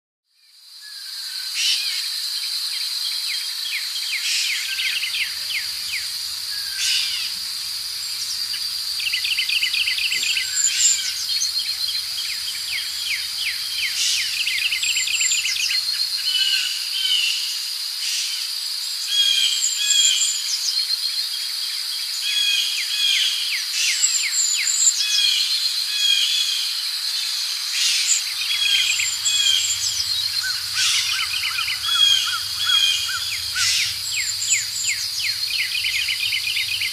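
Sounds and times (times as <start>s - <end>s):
insect drone: 0.4s - 36.9s
birds chirping and trilling: 3.8s - 18.2s, 22.1s - 36.9s.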